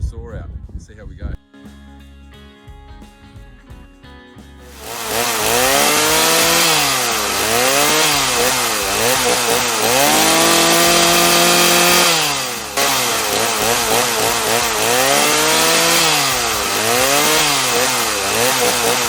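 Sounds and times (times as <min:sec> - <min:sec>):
chainsaw revving: 0:04.7 - 0:19.0.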